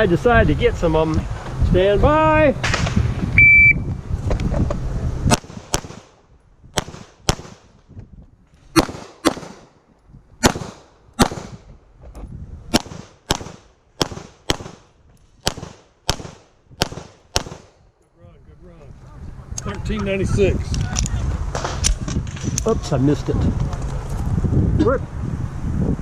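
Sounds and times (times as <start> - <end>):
handgun shots with echo: 8.8 - 9.7, 15.4 - 17.7.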